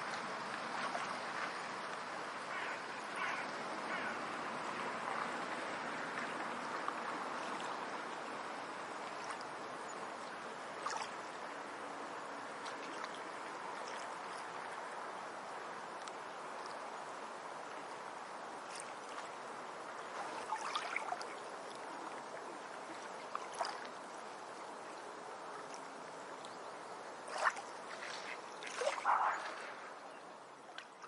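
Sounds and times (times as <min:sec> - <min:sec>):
steady water noise: 0:00.0 - 0:31.0
splashy rustling bursts: 0:20.1 - 0:21.3, 0:27.3 - 0:30.0.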